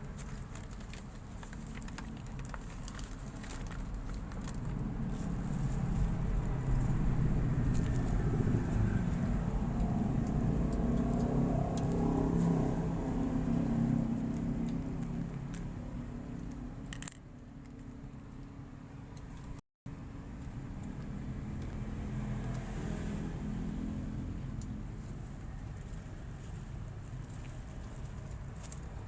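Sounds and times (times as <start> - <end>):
vehicle engine running: 0.0 - 17.2.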